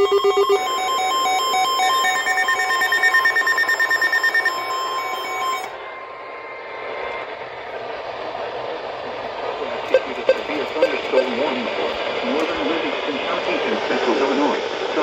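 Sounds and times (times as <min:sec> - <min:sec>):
rapid electronic alarm beeps: 0:00.0 - 0:05.7, 0:09.9 - 0:11.2
steady high tone: 0:00.0 - 0:14.2
radio hiss: 0:09.1 - 0:15.0.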